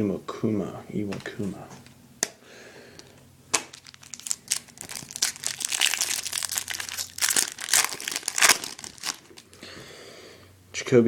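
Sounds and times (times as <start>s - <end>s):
foil wrapper crinkling and tearing: 3.6s - 9.6s.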